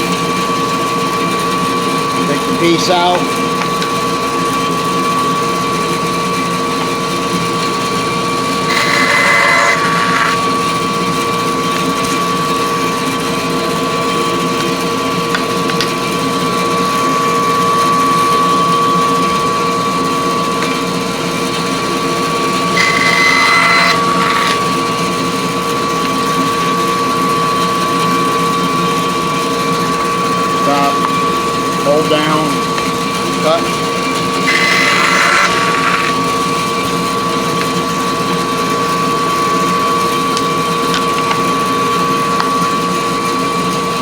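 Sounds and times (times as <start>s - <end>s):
bandsaw and shop vacuum hum: 0.0s - 44.0s
saw blade cutting wood: 8.6s - 10.9s, 22.6s - 25.2s, 34.4s - 36.6s.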